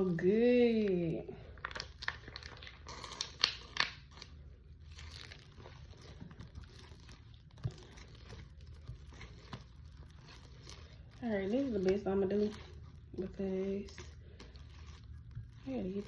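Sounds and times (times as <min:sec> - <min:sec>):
hands squishing sticky slime: 0:00.0 - 0:16.0
sticky pops and crackles: 0:01.6 - 0:04.4.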